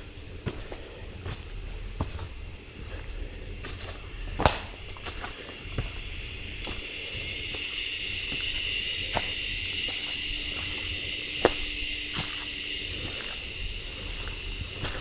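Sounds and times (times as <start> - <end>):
footsteps on rocky trail: 0.0 - 15.0
steady high-pitched drone: 0.0 - 15.0
very high chirps: 4.2 - 15.0.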